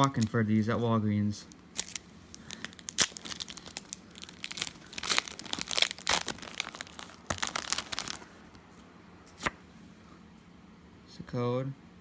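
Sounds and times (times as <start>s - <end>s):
foil wrapper crinkling and tearing: 1.7s - 8.5s.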